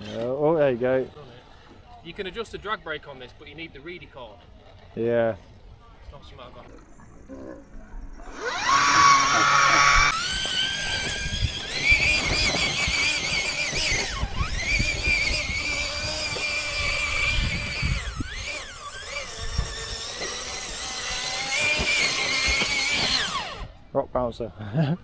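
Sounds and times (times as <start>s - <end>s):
electric motor whining: 7.6s - 23.8s.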